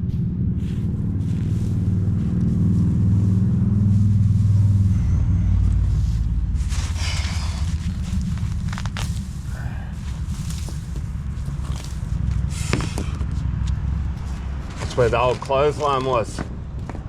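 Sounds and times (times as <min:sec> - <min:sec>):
low engine rumble: 0:00.0 - 0:17.0.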